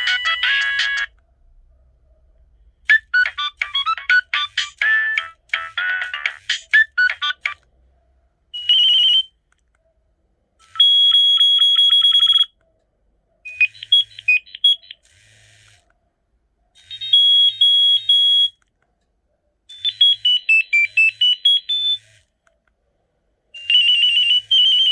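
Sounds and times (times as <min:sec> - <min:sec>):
mobile phone ringtones: 0:00.0 - 0:01.1, 0:02.9 - 0:07.6, 0:10.7 - 0:12.5, 0:19.7 - 0:22.1.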